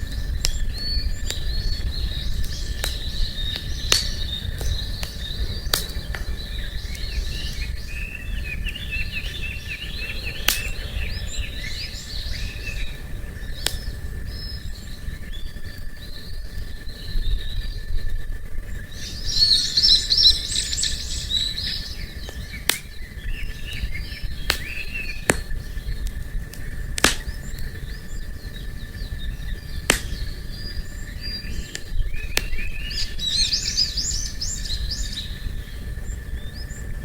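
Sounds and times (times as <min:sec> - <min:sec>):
campfire crackling and popping: 0:00.0 - 0:37.0
low steady rumble: 0:00.0 - 0:37.0
small birds chirping: 0:00.0 - 0:37.0.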